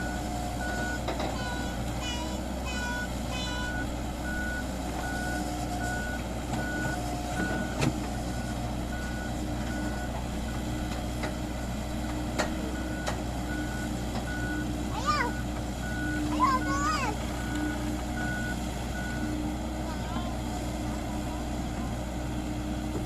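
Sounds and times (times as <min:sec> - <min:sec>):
reversing alarm beeps: 0:00.0 - 0:01.1, 0:02.8 - 0:11.0, 0:12.8 - 0:16.8, 0:17.4 - 0:19.4
heavy vehicle engine running: 0:00.0 - 0:23.0.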